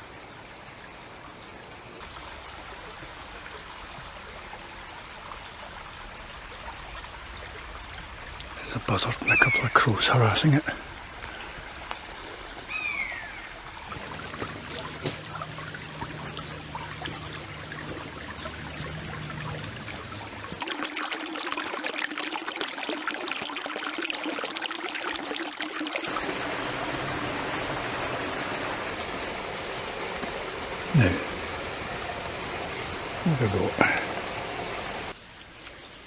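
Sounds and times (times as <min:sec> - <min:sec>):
stream running: 0:00.0 - 0:36.0
buzzard mewing call: 0:09.2 - 0:09.9.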